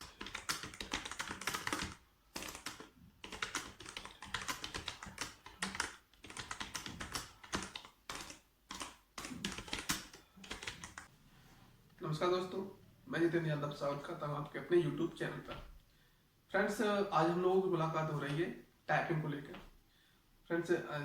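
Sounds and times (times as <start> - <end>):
fast typing on keyboard: 0.0 - 11.1.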